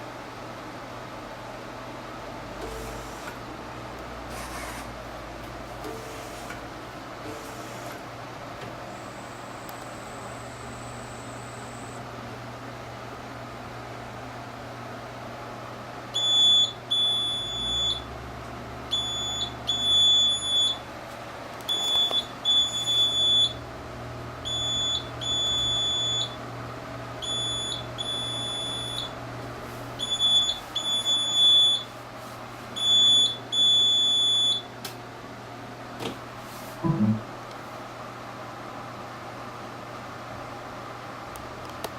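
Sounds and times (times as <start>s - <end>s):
printer alarm beeping: 2.6s - 3.3s, 8.8s - 12.0s, 16.2s - 18.1s, 18.9s - 20.9s, 21.7s - 23.6s, 24.4s - 26.4s, 27.2s - 29.2s, 30.0s - 31.9s, 32.8s - 34.7s
steady low hum: 4.9s - 16.4s.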